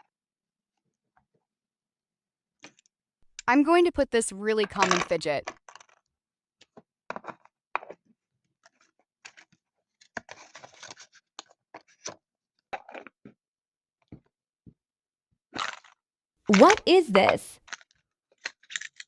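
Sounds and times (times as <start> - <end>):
fidget toys clicking and tapping: 16.5 - 17.5.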